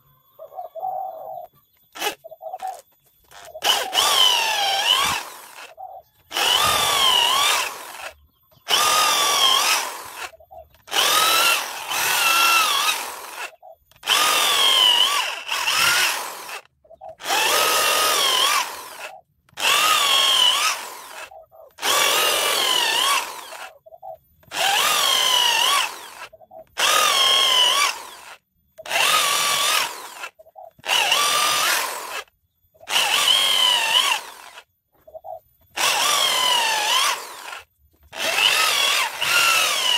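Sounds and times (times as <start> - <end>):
power tool cutting wood: 2.0 - 23.7, 24.4 - 32.3, 32.9 - 34.7, 35.7 - 39.9.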